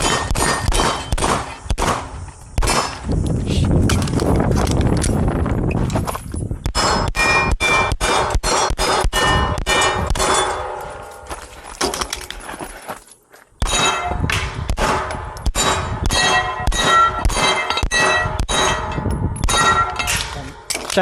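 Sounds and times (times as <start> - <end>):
rapid handgun fire: 0.0 - 3.0, 6.7 - 10.6, 14.6 - 18.6
steel targets clanging: 15.1 - 21.0.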